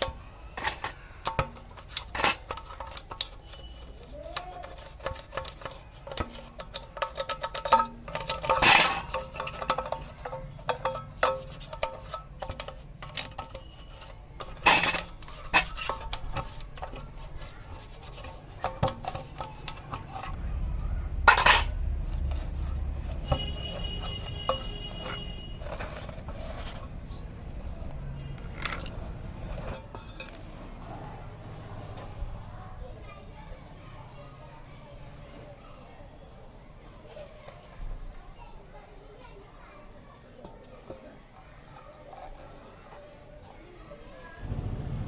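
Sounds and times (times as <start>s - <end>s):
metal tools clinking: 0.0s - 20.4s, 21.3s - 31.0s.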